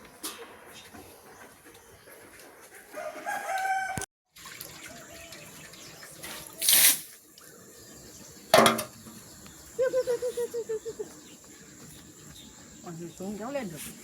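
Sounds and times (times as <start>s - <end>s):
rooster crowing: 3.0s - 4.1s.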